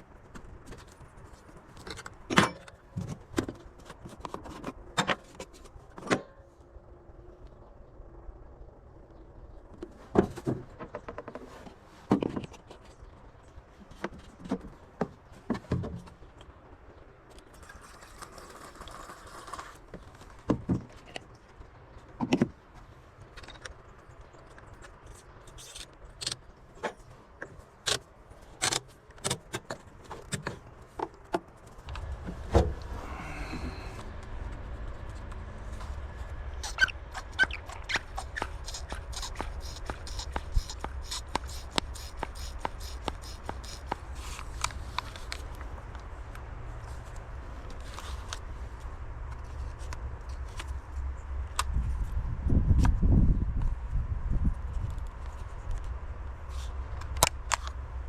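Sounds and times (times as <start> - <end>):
steady low rumble: 31.6 - 58.0.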